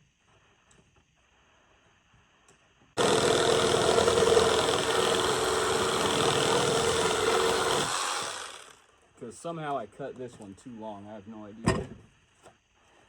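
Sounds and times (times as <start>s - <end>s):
power saw cutting wood: 3.0s - 8.9s.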